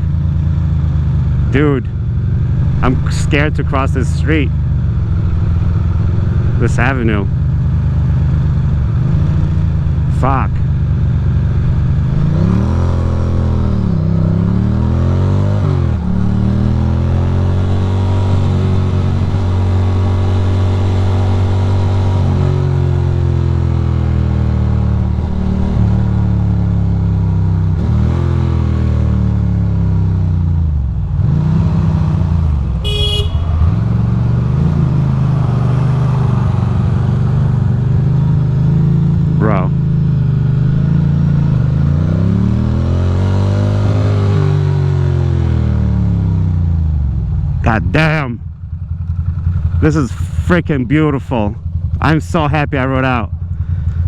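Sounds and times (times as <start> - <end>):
motorcycle engine running: 0.0 - 54.0
high horn toot: 32.8 - 34.0.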